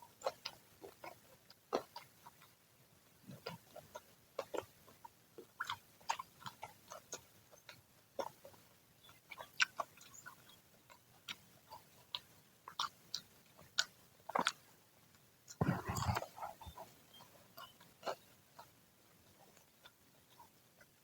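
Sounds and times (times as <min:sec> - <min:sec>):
chewing crispy snacks: 0:00.0 - 0:02.6, 0:03.2 - 0:21.0
wet mouth clicks: 0:15.5 - 0:18.2.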